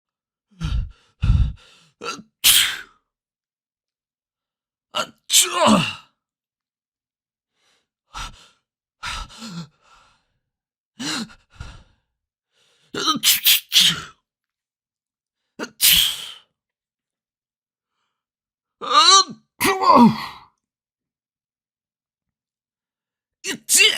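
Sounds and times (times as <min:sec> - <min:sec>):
person sneezing: 0:02.4 - 0:02.9, 0:13.0 - 0:14.1, 0:15.6 - 0:16.4.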